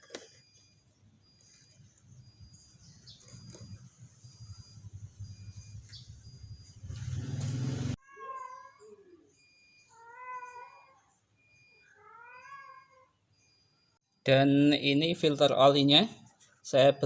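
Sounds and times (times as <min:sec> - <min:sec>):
cat meowing: 0:08.0 - 0:09.3, 0:09.9 - 0:11.1, 0:11.9 - 0:13.2.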